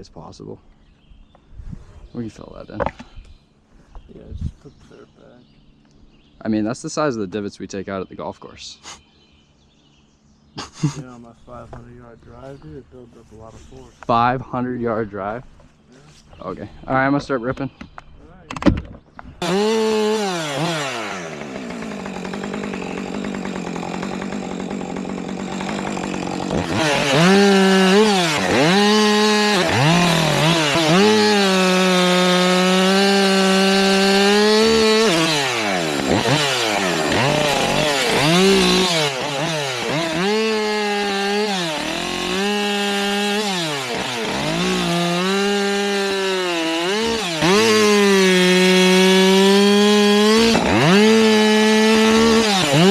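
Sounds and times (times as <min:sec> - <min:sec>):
chainsaw idling and cutting: 0:19.4 - 0:52.9.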